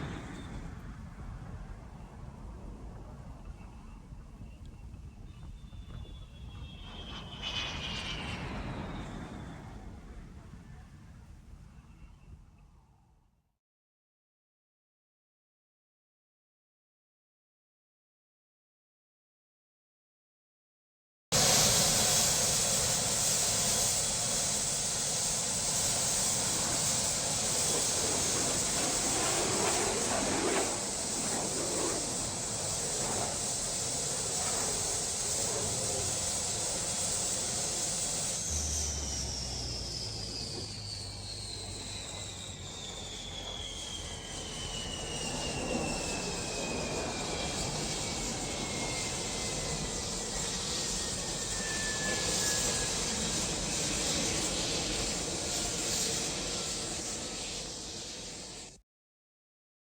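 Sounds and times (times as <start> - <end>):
jet aircraft roaring hiss: 0.0 - 12.0, 21.4 - 58.8
high jet whine falling in pitch: 3.4 - 10.4, 21.4 - 58.8.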